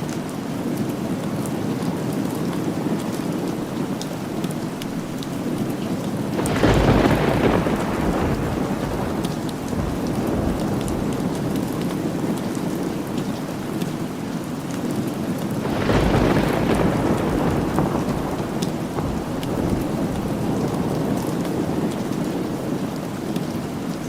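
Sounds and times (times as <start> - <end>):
steady rain: 0.0 - 24.0
thunder rolling: 5.0 - 13.7, 15.6 - 23.0.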